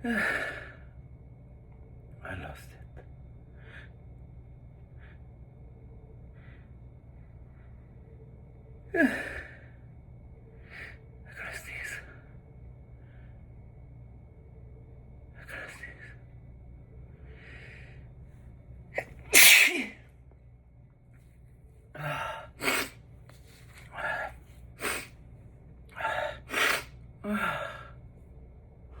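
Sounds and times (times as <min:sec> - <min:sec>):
person sneezing: 0:19.0 - 0:20.0, 0:22.6 - 0:23.0.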